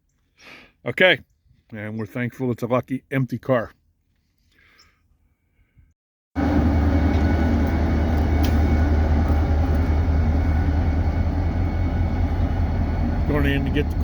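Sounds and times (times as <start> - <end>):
heavy engine droning: 6.4 - 14.0.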